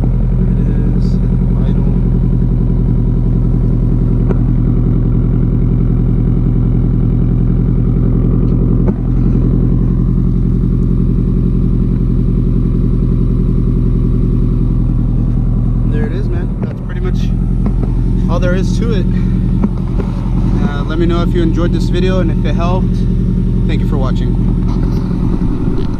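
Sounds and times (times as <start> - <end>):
car engine idling: 0.0 - 25.9.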